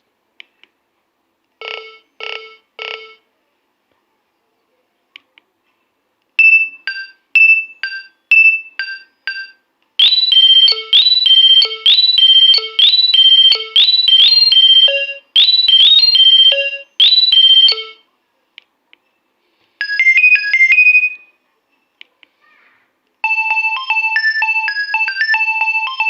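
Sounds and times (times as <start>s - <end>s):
phone ringtones: 1.6s - 3.3s, 6.4s - 18.1s, 19.8s - 21.4s, 23.2s - 26.0s.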